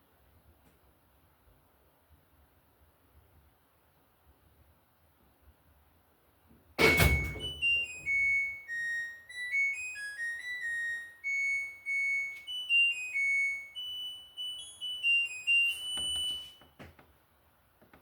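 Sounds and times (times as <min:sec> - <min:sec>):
washing machine beeper melody: 0:06.8 - 0:16.8.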